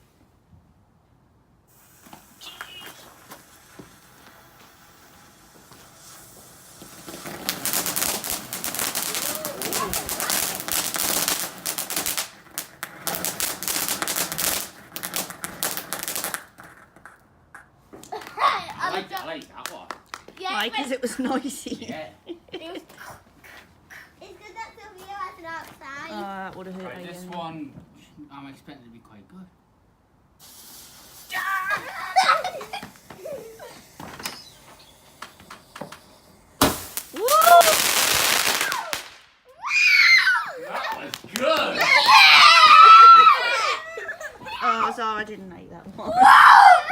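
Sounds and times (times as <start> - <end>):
firework crackling: 1.6 - 16.9, 30.4 - 45.4
people laughing: 21.1 - 23.1, 31.6 - 33.6, 40.5 - 44.6.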